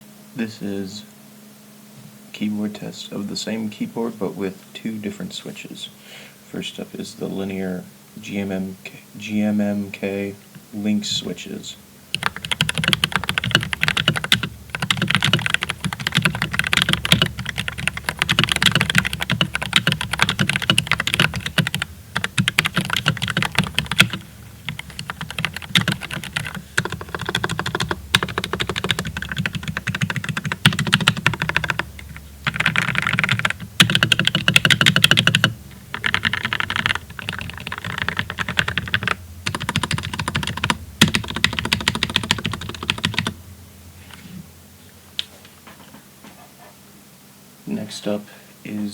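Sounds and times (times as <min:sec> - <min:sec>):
mechanical keyboard typing: 0:12.2 - 0:43.4.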